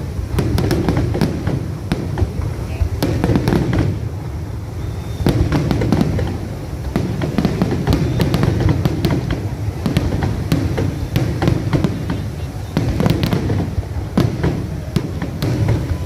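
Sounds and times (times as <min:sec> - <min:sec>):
continuous low rumble: 0:00.0 - 0:16.0
fireworks bangs and crackles: 0:00.0 - 0:16.0.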